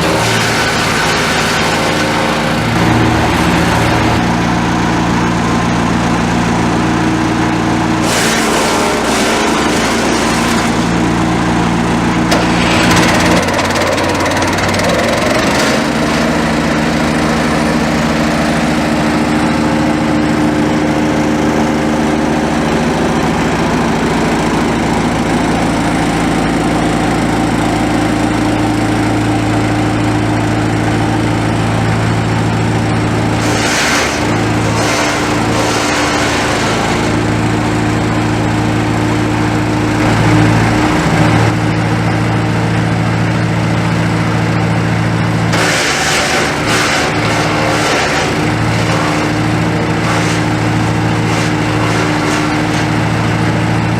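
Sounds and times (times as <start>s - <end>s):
wood chipper engine running: 0.0s - 53.9s
rough chipping bursts: 12.3s - 16.1s.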